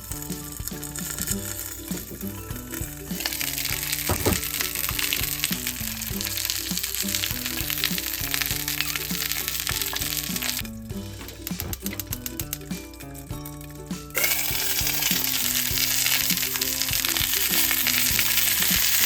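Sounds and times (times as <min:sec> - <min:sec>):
background music: 0:00.0 - 0:19.0
food sizzling in frying pan: 0:14.2 - 0:19.0.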